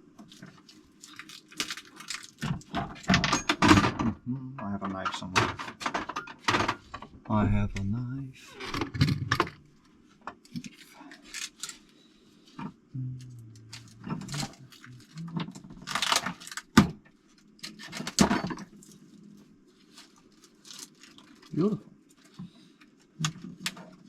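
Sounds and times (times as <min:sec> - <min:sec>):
hands rustling small items: 0:00.2 - 0:03.0, 0:09.8 - 0:12.6, 0:13.3 - 0:24.0
rustling scrapes: 0:18.7 - 0:23.0.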